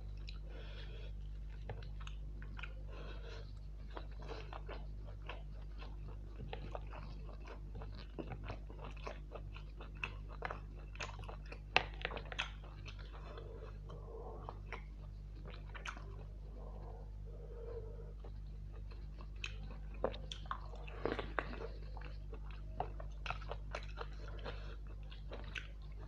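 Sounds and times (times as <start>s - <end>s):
chewing with wet mouth smacks: 0.0s - 26.0s
low hum: 10.4s - 26.0s.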